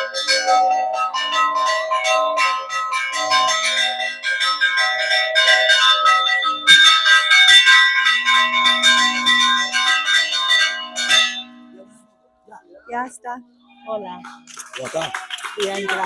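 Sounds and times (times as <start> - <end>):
church bells ringing rapid peal: 0.0 - 12.0.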